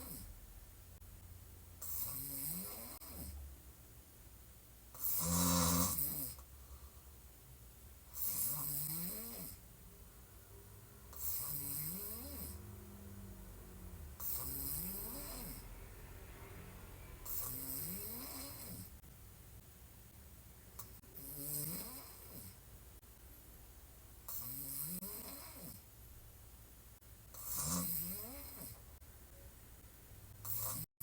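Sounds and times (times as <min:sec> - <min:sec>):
woman snoring: 0:01.8 - 0:03.4, 0:05.0 - 0:06.4, 0:08.2 - 0:09.6, 0:11.1 - 0:12.8, 0:14.2 - 0:15.7, 0:17.2 - 0:19.0, 0:21.1 - 0:22.6, 0:24.3 - 0:25.8, 0:27.4 - 0:28.8, 0:30.4 - 0:30.9.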